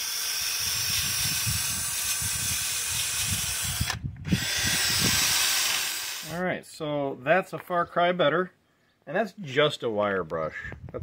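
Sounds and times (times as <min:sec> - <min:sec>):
drill wire wheel scrubbing rust: 0:00.0 - 0:06.3.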